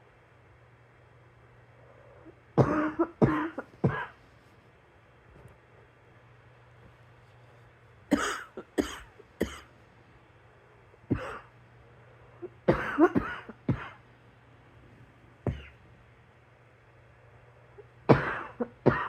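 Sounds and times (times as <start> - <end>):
person coughing: 2.6 - 4.2, 8.1 - 9.7, 11.1 - 11.6, 12.4 - 14.0, 15.5 - 15.8, 18.1 - 19.0.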